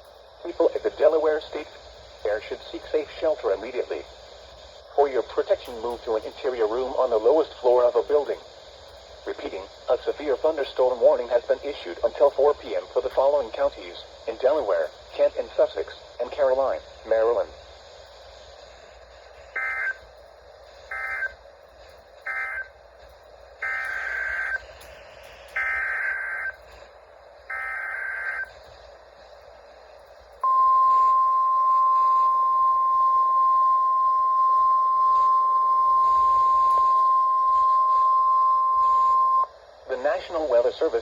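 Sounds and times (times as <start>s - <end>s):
screeching digital data bursts: 18.8s - 21.4s, 22.0s - 22.8s, 23.5s - 28.8s, 30.4s - 39.2s
steady single-pitch alert tone: 19.6s - 20.0s, 20.9s - 21.4s, 22.3s - 22.7s, 23.6s - 24.6s, 25.6s - 26.6s, 27.5s - 28.5s, 30.4s - 39.5s.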